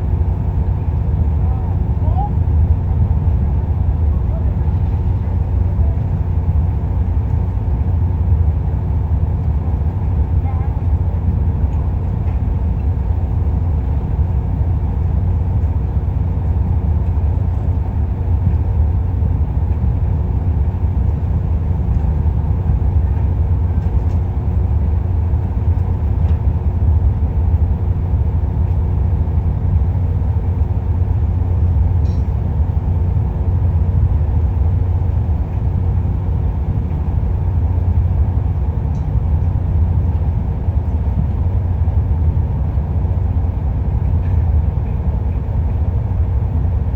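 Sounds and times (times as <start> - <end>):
diesel excavator engine running: 0.0 - 46.9.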